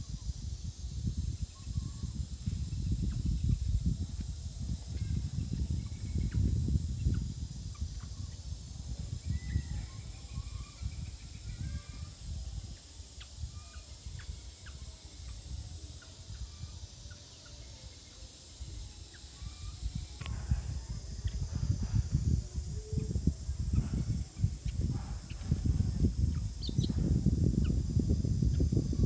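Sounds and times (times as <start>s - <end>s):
steady high hiss: 0.0s - 29.0s
animal chirps and squeaks: 23.7s - 27.1s.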